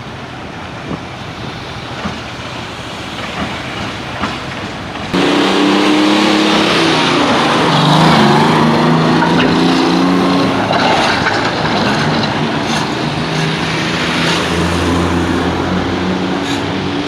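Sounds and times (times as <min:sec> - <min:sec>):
steady outdoor noise: 0:00.0 - 0:17.0
loud engine running: 0:05.1 - 0:17.0.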